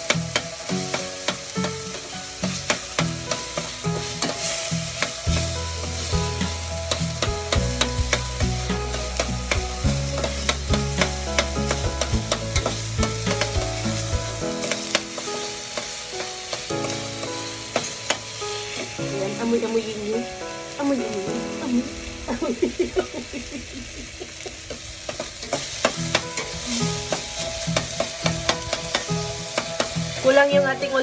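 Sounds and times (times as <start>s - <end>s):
utensil scraping pan: 0.0s - 19.0s
onion sizzling in oil: 0.0s - 31.0s.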